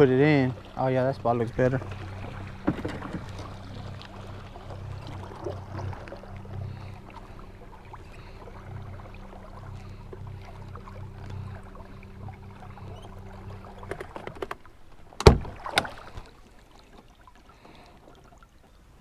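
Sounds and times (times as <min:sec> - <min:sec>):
electric boat motor humming: 0:00.0 - 0:17.8
loud knocks: 0:02.6 - 0:03.4.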